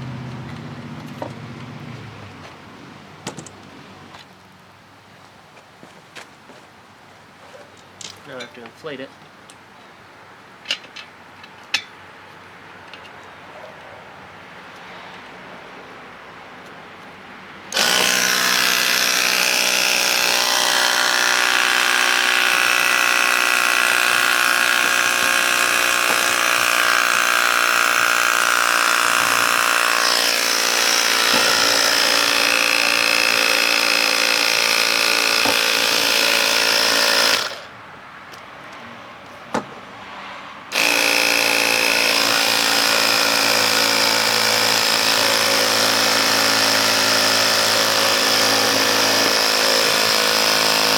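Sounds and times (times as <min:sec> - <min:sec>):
electric air compressor running: 0:17.7 - 0:37.7, 0:40.7 - 0:50.9.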